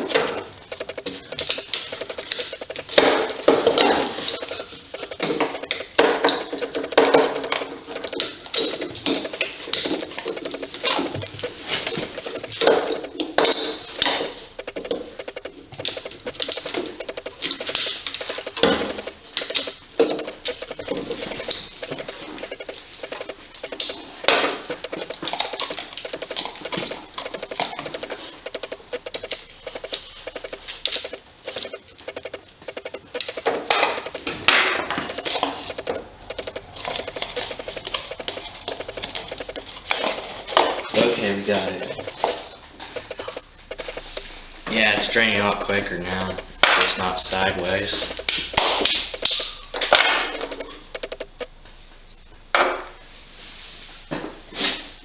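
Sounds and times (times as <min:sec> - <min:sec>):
socket ratchet clicking: 0:00.0 - 0:40.3
metal tools rattling and scraping: 0:00.0 - 0:51.4.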